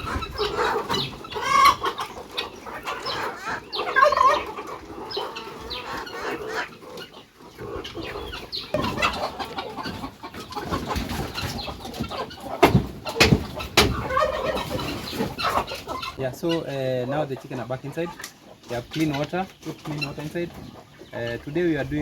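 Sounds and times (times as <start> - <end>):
chickens clucking: 0.0 - 22.0
sharp knocks: 12.6 - 14.0.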